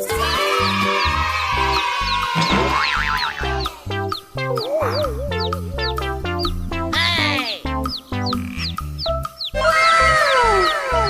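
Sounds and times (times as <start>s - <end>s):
bouncy children's music: 0.0s - 11.0s
wobbling cartoon sound effect: 2.3s - 7.8s, 9.6s - 11.0s.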